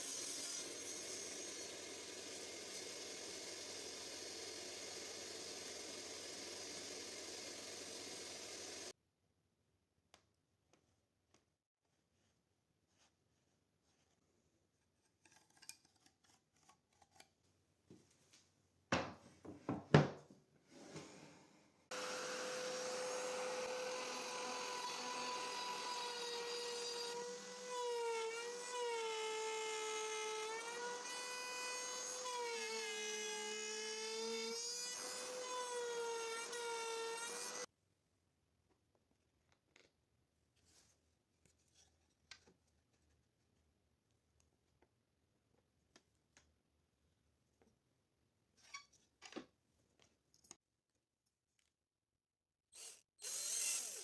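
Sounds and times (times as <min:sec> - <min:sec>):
table saw cutting board: 0:00.0 - 0:08.9, 0:21.9 - 0:37.7
wood knocking and banging: 0:18.9 - 0:20.3.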